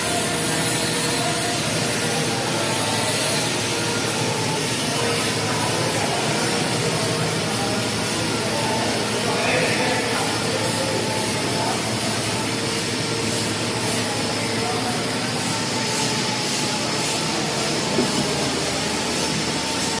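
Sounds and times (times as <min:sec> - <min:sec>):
loud industrial rush: 0:00.0 - 0:20.0.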